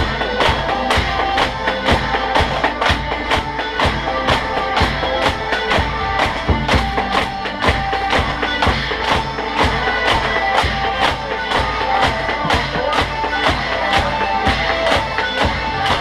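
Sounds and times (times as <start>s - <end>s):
music with percussive beat: 0.0s - 16.0s.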